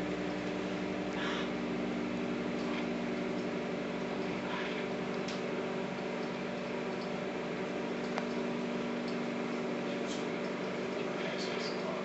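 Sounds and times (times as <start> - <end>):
microwave oven humming: 0.0 - 12.0.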